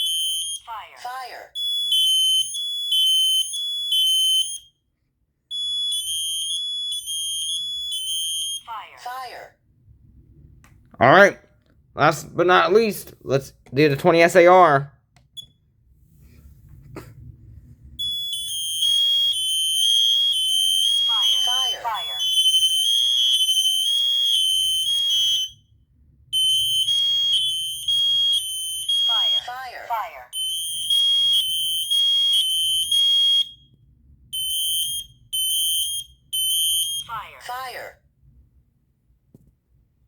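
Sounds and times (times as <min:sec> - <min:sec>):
smoke alarm beeping: 0:00.0 - 0:00.9, 0:01.5 - 0:04.9, 0:05.5 - 0:08.8, 0:15.3 - 0:15.6, 0:18.0 - 0:37.4.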